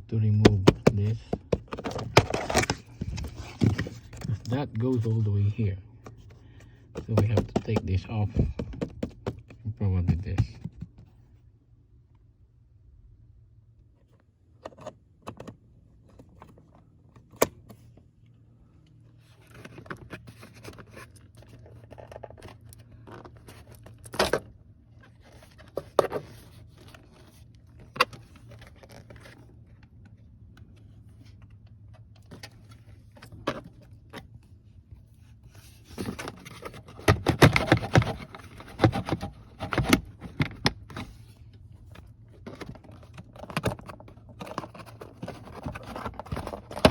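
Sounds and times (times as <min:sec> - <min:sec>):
rattling and scraping: 0:00.3 - 0:05.3, 0:35.5 - 0:46.9
plastic parts clicking and knocking: 0:00.4 - 0:04.5, 0:06.0 - 0:11.1, 0:36.0 - 0:41.2, 0:41.9 - 0:46.9.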